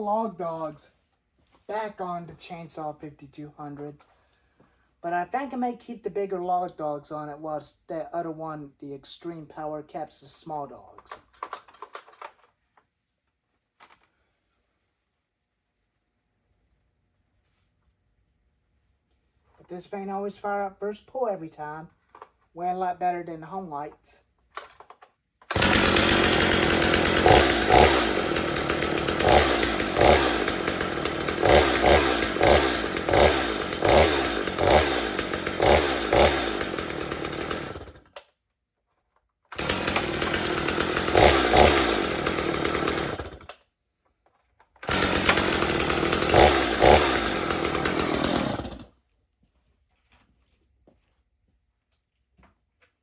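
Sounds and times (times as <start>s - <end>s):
chainsaw throttle revving: 25.5s - 38.2s, 39.5s - 43.6s, 44.8s - 48.9s.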